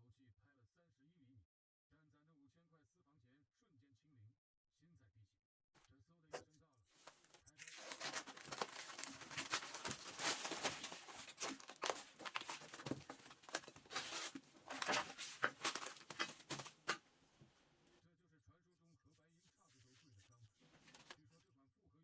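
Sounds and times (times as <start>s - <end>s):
packaging tearing and crinkling: 7.1s - 17.0s.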